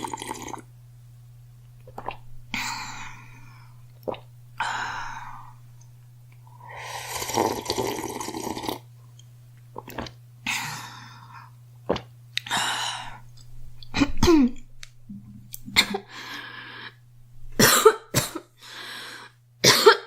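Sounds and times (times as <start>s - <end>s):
girl breathing: 4.6s - 5.6s, 12.5s - 13.3s, 16.1s - 17.0s, 18.6s - 19.4s.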